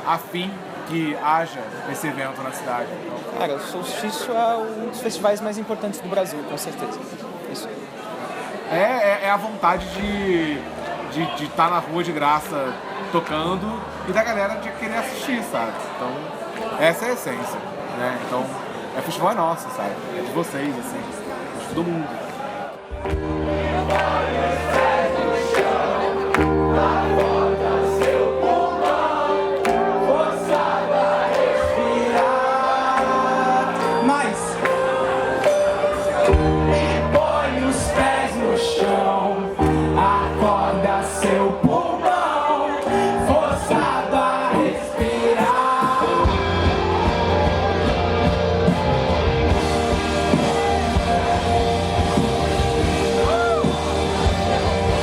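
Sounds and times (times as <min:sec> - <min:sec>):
singing with band music: 0:23.0 - 0:55.0.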